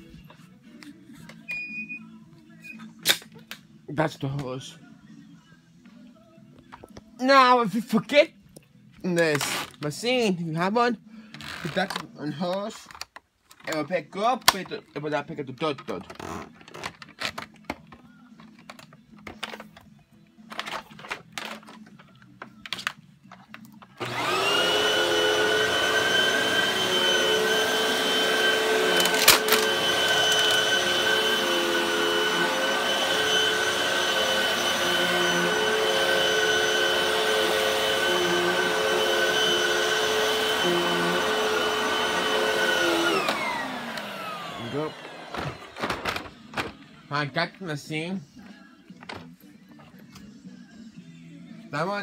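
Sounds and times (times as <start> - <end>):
vacuum cleaner whining: 23.8 - 46.8.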